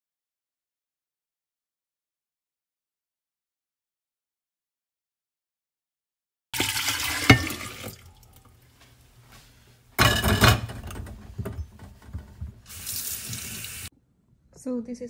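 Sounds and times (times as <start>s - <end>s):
juice pouring into glass: 6.6s - 8.5s.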